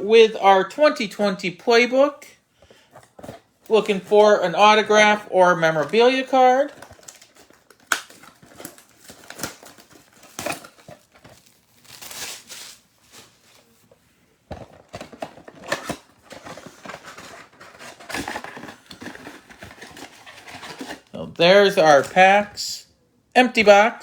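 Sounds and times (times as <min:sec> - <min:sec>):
wrapper crinkling and rustling: 0:02.9 - 0:22.5
cardboard tearing: 0:05.9 - 0:13.7, 0:14.8 - 0:21.1.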